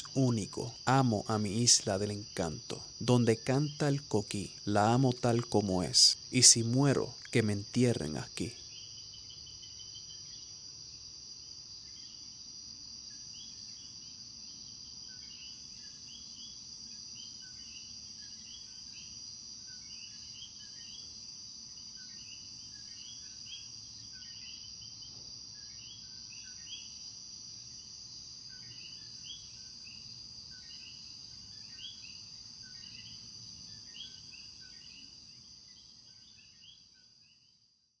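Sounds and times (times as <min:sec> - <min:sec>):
frogs calling: 0:00.0 - 0:08.9
high-pitched insect drone: 0:00.0 - 0:10.6.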